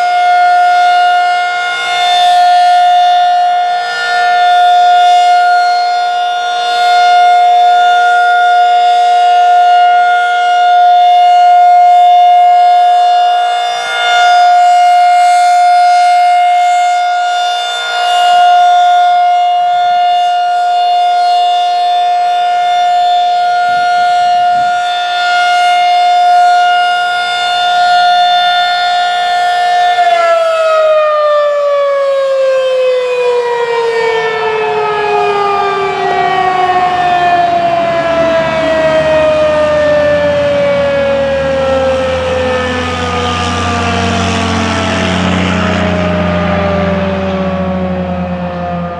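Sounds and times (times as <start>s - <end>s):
rotating siren wailing: 0.0s - 48.9s.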